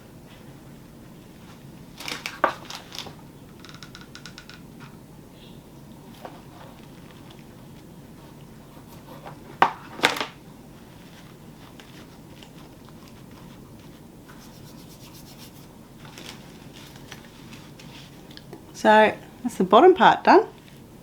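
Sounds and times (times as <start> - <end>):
rustling scrape: 10.7 - 18.3
rubbing and scraping: 10.8 - 18.2.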